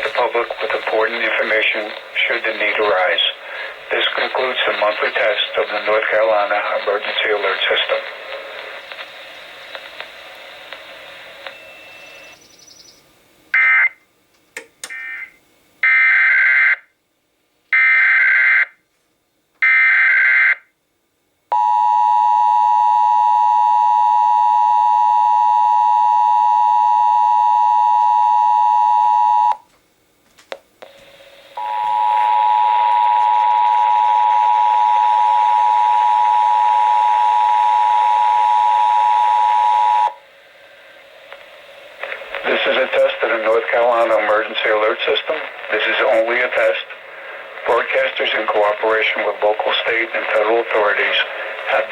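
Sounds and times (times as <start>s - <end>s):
static hiss: 0.0s - 16.4s, 30.7s - 38.4s, 39.0s - 51.9s.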